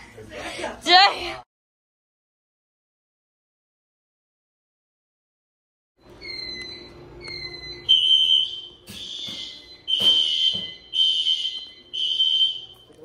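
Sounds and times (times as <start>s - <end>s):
high-pitched fire alarm horn: 6.2s - 13.0s.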